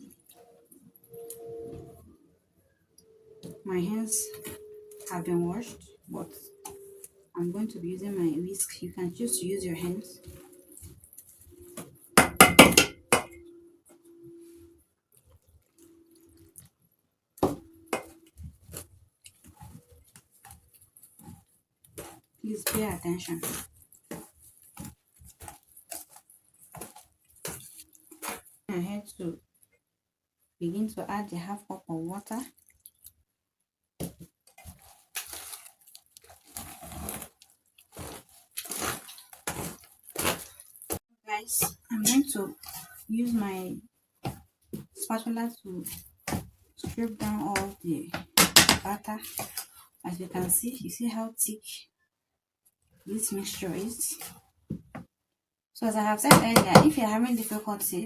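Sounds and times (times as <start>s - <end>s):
whisk squelching through batter: 18.0s - 28.6s, 34.5s - 43.2s.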